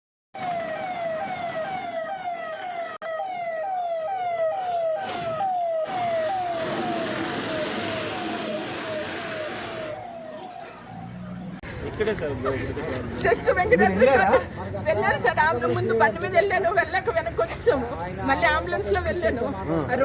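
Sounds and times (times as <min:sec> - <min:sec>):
emergency vehicle siren: 0:00.4 - 0:11.6
road noise: 0:00.4 - 0:20.0.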